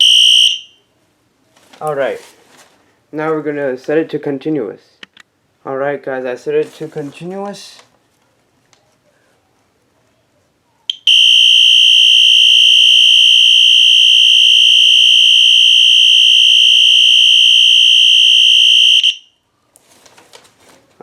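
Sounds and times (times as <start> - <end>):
fire alarm horn tone: 0.0 - 0.8, 11.1 - 19.3.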